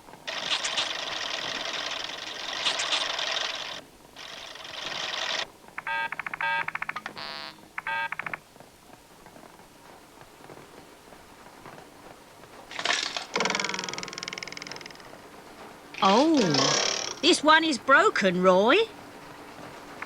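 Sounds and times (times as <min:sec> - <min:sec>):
mechanical clatter of machine: 0:00.0 - 0:05.5, 0:12.4 - 0:17.2.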